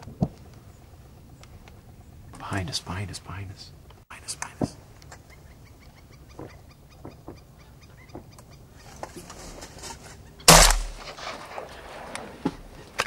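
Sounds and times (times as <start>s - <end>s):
shotgun blast: 10.5s - 11.4s.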